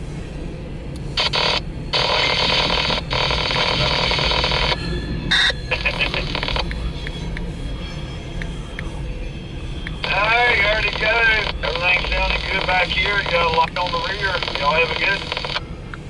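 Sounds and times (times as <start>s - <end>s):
radio static hiss: 1.1s - 4.8s, 5.4s - 7.6s, 9.9s - 15.8s.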